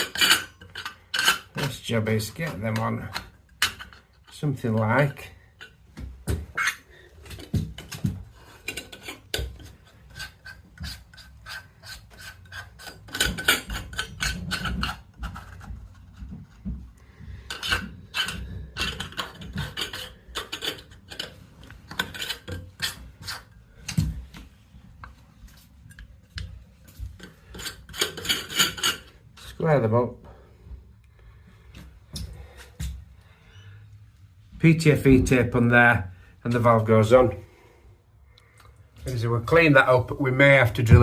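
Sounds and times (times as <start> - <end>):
scrapes and rubs on pipework: 0.0 - 5.8, 6.5 - 30.0.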